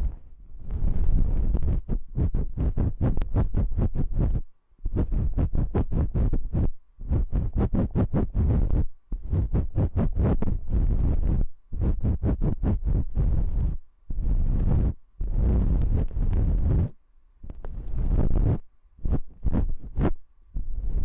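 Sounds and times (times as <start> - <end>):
patting on microphone ears: 0.0 - 21.0.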